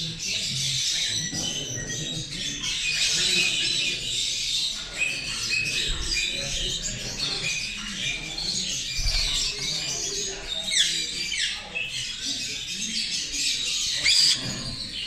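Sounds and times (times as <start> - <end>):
caged birds chirping and calling: 0.0 - 15.0
downward-sweeping bird calls: 13.8 - 14.6.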